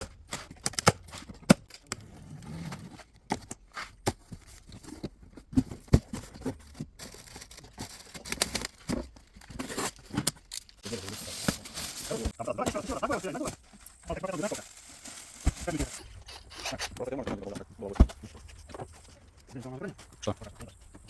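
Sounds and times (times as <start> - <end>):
plastic scraping and rustling: 0.1 - 21.0.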